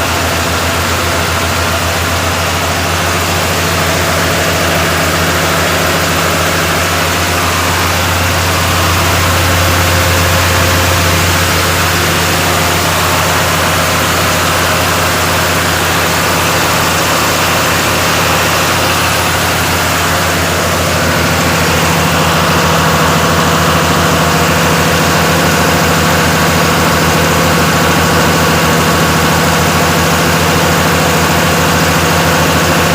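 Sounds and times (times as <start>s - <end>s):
diesel engine idling: 0.0s - 32.9s.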